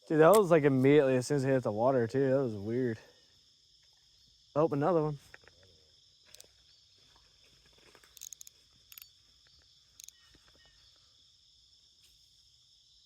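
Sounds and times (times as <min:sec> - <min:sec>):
high-pitched insect chorus: 0:00.1 - 0:13.0
sharp clicks: 0:00.2 - 0:00.5, 0:08.1 - 0:09.1.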